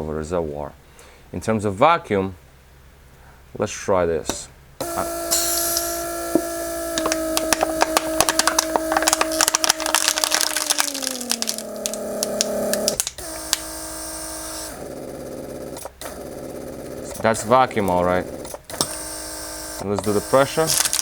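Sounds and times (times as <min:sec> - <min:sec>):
pump motor humming: 0:04.8 - 0:21.0
plastic bottle crackling: 0:06.9 - 0:13.8, 0:20.0 - 0:21.0.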